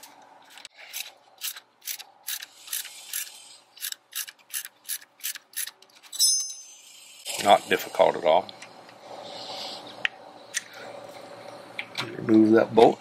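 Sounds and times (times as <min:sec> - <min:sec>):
ratchet wrench clicking: 0:01.4 - 0:05.8.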